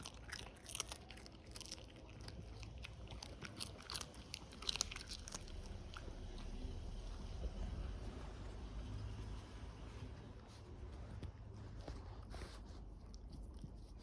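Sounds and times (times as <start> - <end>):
dog crunching dry treats: 0.0 - 6.6.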